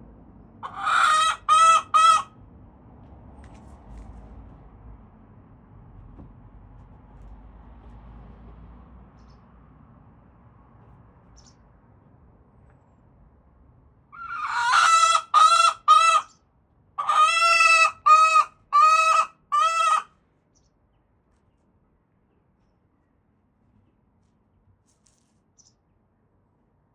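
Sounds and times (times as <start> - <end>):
hen squawking: 0.6 - 2.3, 14.2 - 16.3, 17.0 - 20.1.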